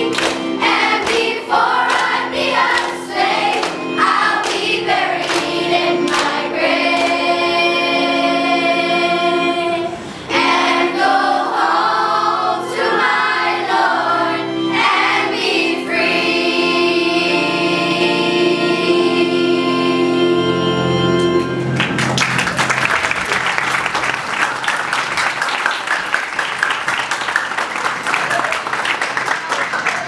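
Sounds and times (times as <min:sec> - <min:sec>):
choir singing slowly: 0:00.0 - 0:21.6.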